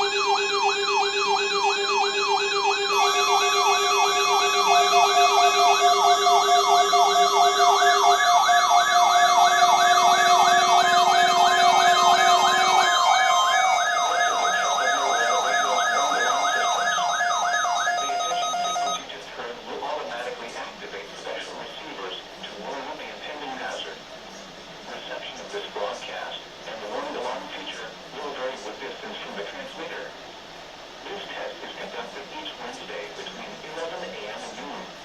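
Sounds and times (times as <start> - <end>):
electronic siren yelping: 0.0 - 19.0
wavering siren tones: 0.0 - 19.0
steady low hum: 0.0 - 35.0.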